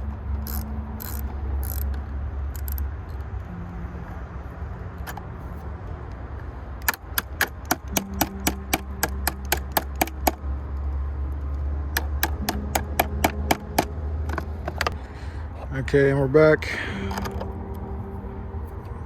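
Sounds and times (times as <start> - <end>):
steady low hum: 0.0 - 19.0
hand tool rapid clicks: 0.4 - 1.8, 2.5 - 2.8, 6.8 - 10.4, 12.0 - 15.0.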